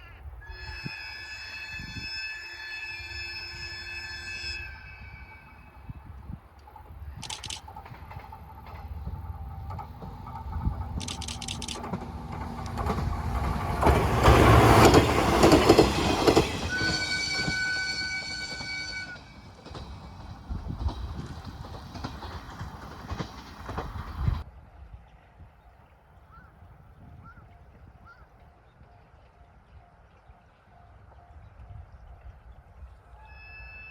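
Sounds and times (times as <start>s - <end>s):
train horn blast: 0.4s - 6.0s, 16.7s - 19.4s
train wheels clattering: 6.6s - 24.5s.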